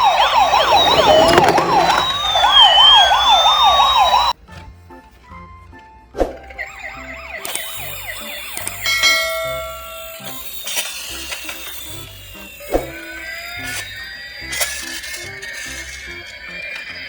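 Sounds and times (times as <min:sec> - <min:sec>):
emergency vehicle sirens wailing: 0:00.0 - 0:04.4, 0:06.4 - 0:10.4.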